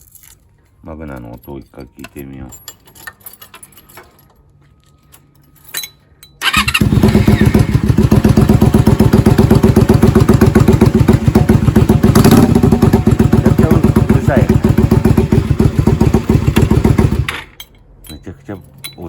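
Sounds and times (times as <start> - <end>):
motorcycle engine starting and idling: 6.4 - 17.6.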